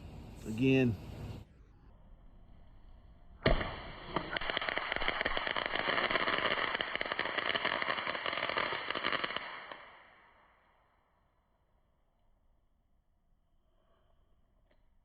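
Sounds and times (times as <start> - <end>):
sharp hit: 3.4 - 4.5.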